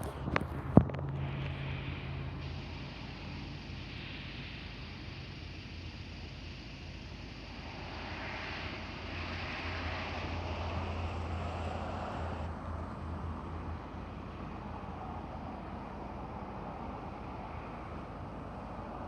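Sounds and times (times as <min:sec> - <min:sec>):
vehicle passing: 0:07.5 - 0:12.6.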